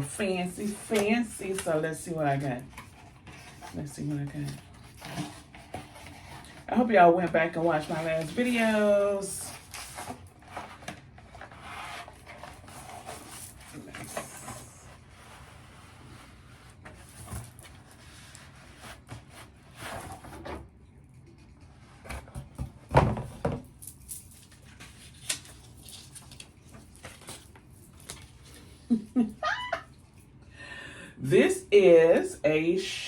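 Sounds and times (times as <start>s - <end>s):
package rustling: 23.7s - 28.7s.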